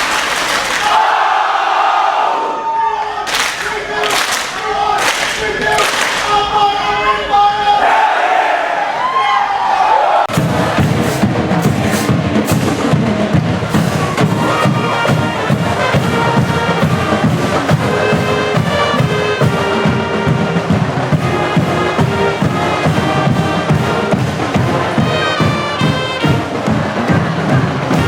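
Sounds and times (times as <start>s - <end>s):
drums fast beat: 3.3s - 6.5s, 10.3s - 28.0s
brass band playing: 3.3s - 6.6s, 10.3s - 28.0s.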